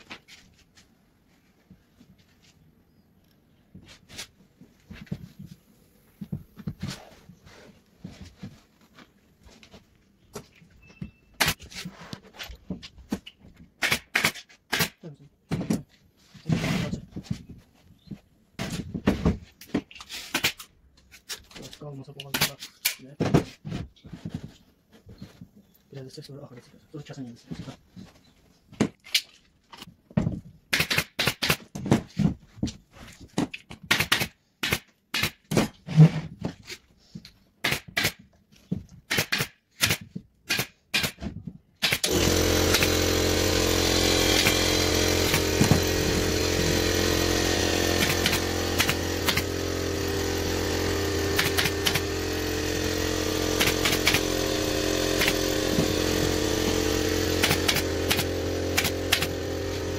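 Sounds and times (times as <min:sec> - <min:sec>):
power tool motor running: 0:41.9 - 0:59.9.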